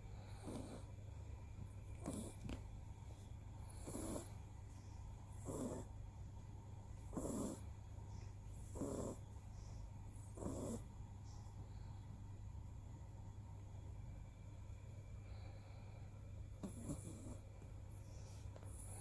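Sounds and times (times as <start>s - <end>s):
cat snoring: 0.1s - 1.0s, 2.0s - 2.4s, 3.6s - 4.4s, 5.3s - 6.0s, 7.0s - 7.7s, 8.5s - 9.3s, 10.1s - 10.9s, 16.6s - 17.5s.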